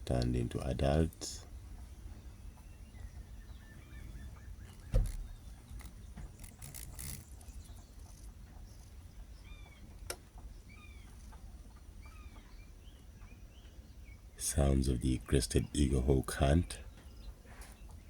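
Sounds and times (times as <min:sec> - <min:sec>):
birds chirping faintly: 0:00.0 - 0:18.0
thump against microphone: 0:04.9 - 0:05.3.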